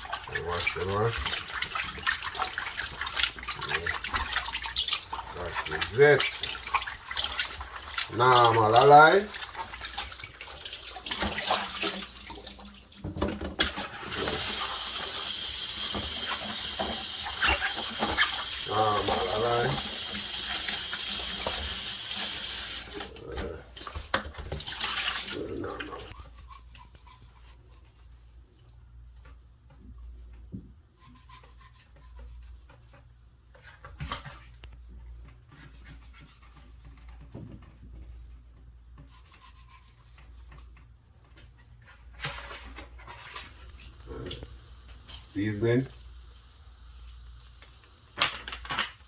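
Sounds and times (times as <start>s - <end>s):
tap water running into sink: 0.0s - 23.1s.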